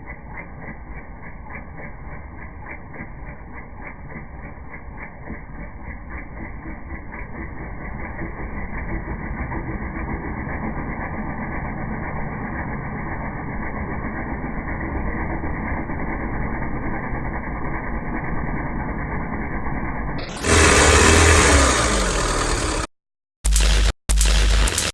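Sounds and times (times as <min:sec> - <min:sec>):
car engine running: 0:05.6 - 0:22.9.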